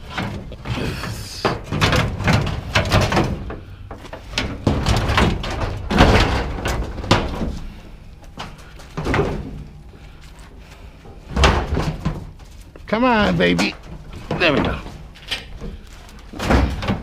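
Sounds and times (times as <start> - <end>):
scrap metal knocking and scraping: 0.0 - 17.0.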